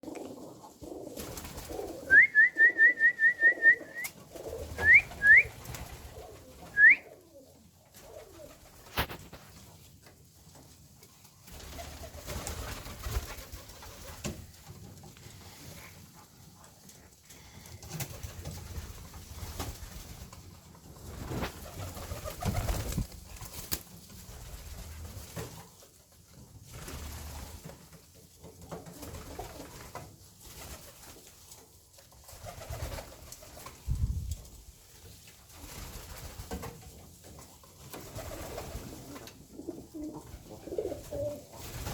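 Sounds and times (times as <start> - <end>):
pigeons cooing: 0.0 - 8.7, 39.0 - 41.5.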